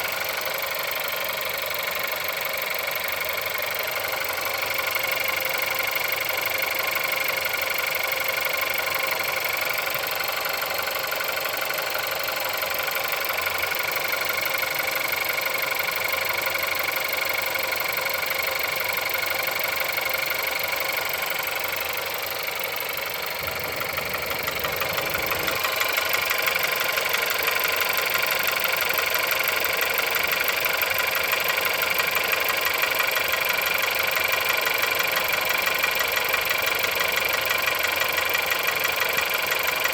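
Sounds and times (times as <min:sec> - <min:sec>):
car engine idling with knock: 0:00.0 - 0:39.9.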